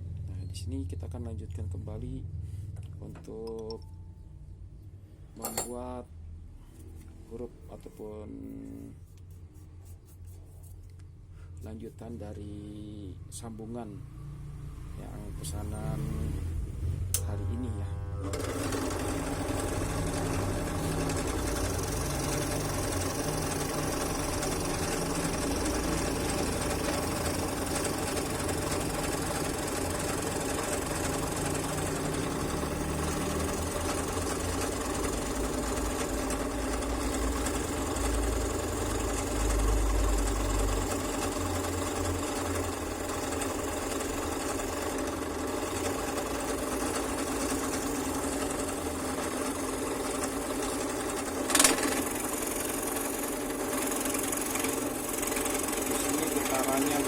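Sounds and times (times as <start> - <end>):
scroll saw cutting wood: 17.2 - 57.0.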